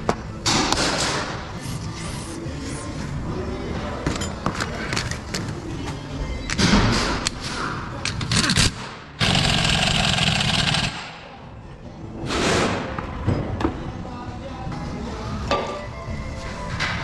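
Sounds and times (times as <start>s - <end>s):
power tool running: 9.2s - 11.1s.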